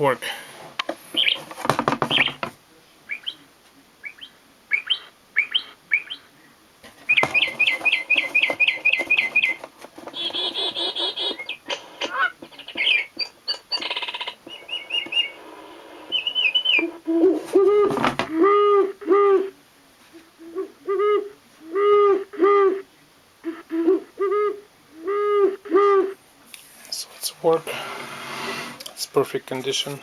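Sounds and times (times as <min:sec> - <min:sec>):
recorded bird songs from speaker: 0:01.1 - 0:26.2, 0:28.8 - 0:30.0
low owl hoot: 0:07.0 - 0:26.2.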